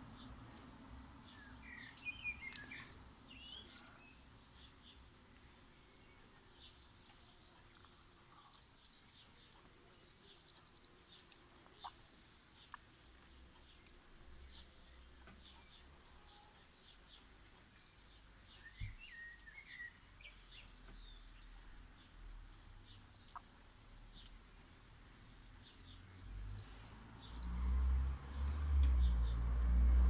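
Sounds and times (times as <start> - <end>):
small birds chirping: 0.0 - 29.7.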